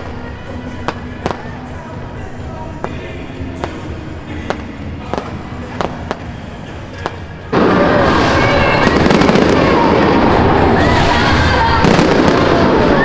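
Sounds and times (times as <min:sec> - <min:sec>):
fireworks bursts: 0:00.0 - 0:13.0.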